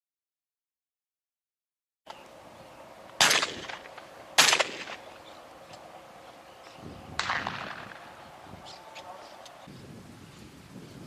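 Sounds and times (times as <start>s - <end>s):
gunfire burst: 3.2s - 5.0s, 7.2s - 8.1s
gunshots: 3.2s - 5.1s, 7.2s - 8.2s.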